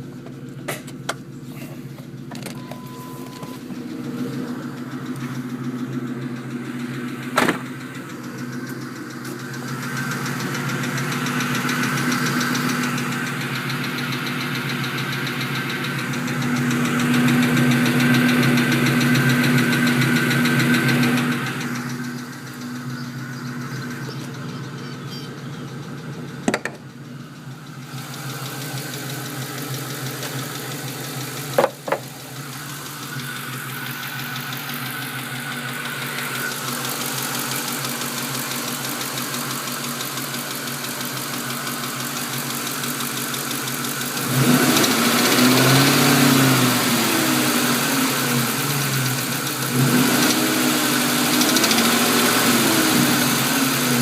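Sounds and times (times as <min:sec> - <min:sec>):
car engine running: 0:00.0 - 0:54.0
engine ticking: 0:00.0 - 0:54.0
sharp knocks: 0:26.4 - 0:26.8.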